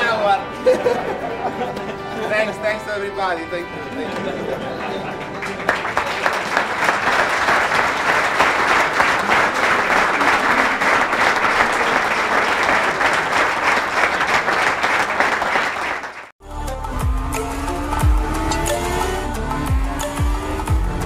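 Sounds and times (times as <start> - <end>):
crowd applauding: 3.9 - 16.3.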